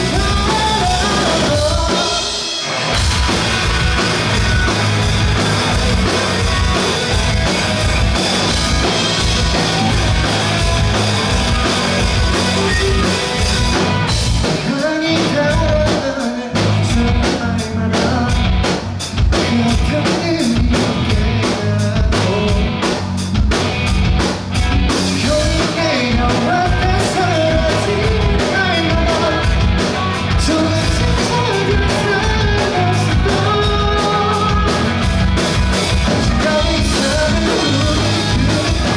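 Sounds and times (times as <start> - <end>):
person singing: 0.0 - 2.5, 30.4 - 35.0, 36.1 - 38.9
bass guitar: 0.0 - 38.9
drum kit: 0.0 - 38.9
electric guitars: 0.0 - 38.9.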